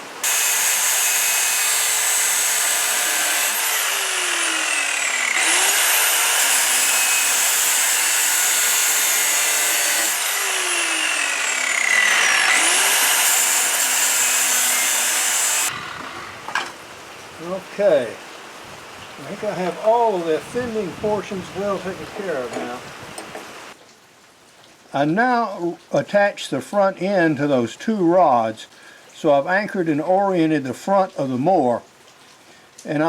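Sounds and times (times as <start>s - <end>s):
angle grinder cutting metal: 0.0s - 16.8s.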